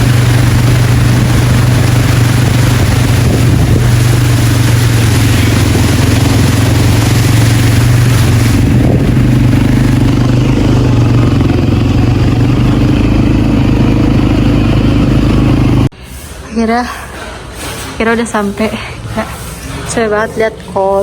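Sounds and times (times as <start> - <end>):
atv engine drone: 0.0 - 15.9.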